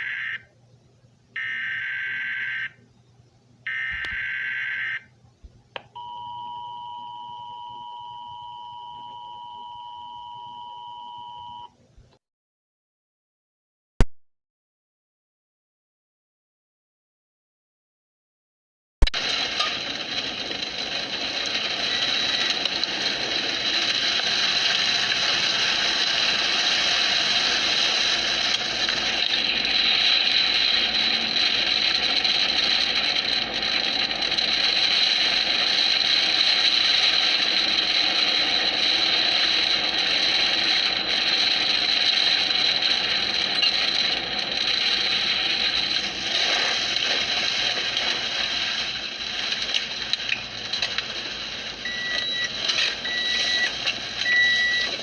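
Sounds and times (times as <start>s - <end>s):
steady rushing noise with whine: 19.2s - 55.0s.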